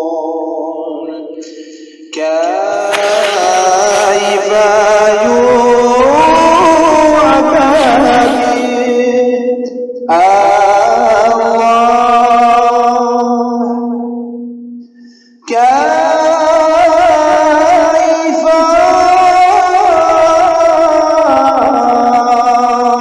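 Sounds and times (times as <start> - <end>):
person singing an ornamented chant: 0.0 - 14.7, 15.4 - 23.0
low held drone note: 2.7 - 9.6.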